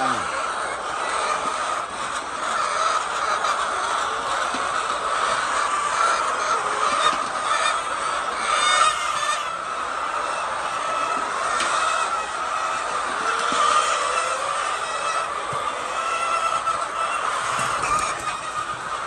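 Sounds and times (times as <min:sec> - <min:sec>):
hens clucking: 0:00.0 - 0:19.0
hen squawk: 0:13.6 - 0:19.0.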